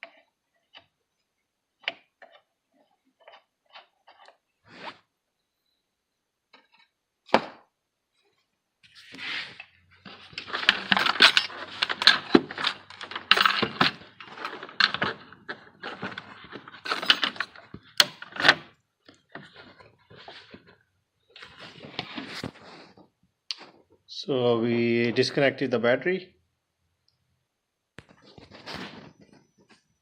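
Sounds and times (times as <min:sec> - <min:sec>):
metal hand tools clattering: 0:10.1 - 0:18.6.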